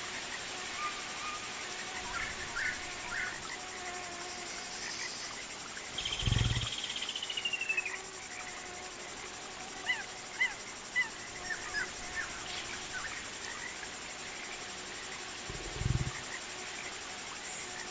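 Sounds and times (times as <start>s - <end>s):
high insect drone: 0.0s - 17.9s
deep rumbles: 6.1s - 6.7s, 15.5s - 16.2s
rapid trilling call: 9.9s - 13.2s.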